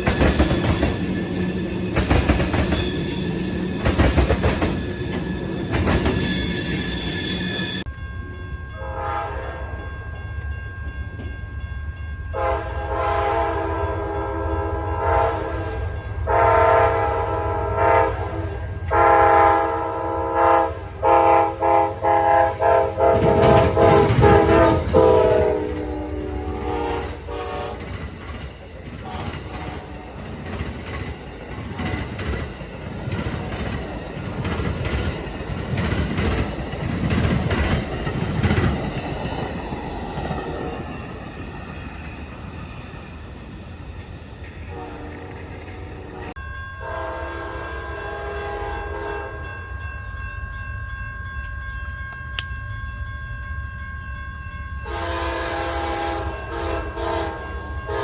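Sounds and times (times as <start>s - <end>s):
train wheels clicking over rail joints: 0.0s - 7.9s, 23.2s - 25.9s, 26.6s - 42.6s
locomotive horn chord: 8.8s - 9.8s, 12.4s - 27.9s, 44.7s - 49.5s, 54.8s - 58.0s.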